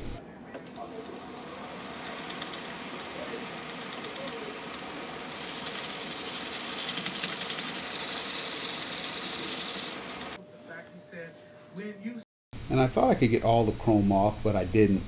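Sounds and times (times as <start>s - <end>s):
lathe humming: 0.8s - 10.4s
sandpaper hissing on metal: 5.2s - 10.4s.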